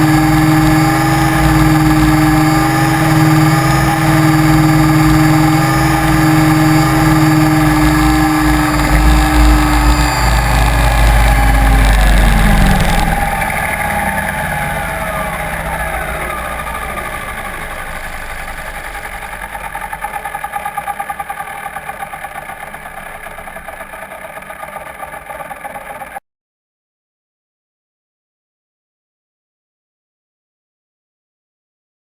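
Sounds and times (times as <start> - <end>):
soft pulsing hum: 0.0 - 24.0
model aircraft motor whine: 0.0 - 26.2.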